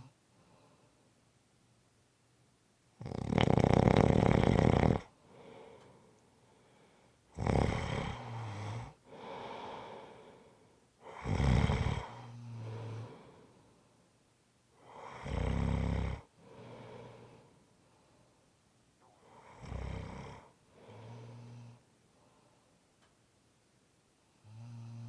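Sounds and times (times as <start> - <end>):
soft breath: 0.0 - 1.2, 5.2 - 7.3, 9.0 - 10.9, 12.5 - 14.1, 16.3 - 19.6, 20.4 - 22.9
person snoring: 3.0 - 5.6, 7.4 - 10.2, 11.0 - 13.3.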